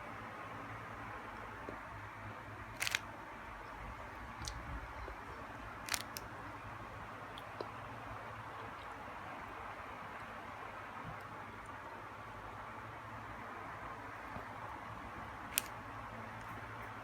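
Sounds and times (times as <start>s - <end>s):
low hiss and hum: 0.0s - 17.0s
sharp clicks: 2.8s - 3.0s, 5.9s - 6.2s, 15.5s - 15.7s.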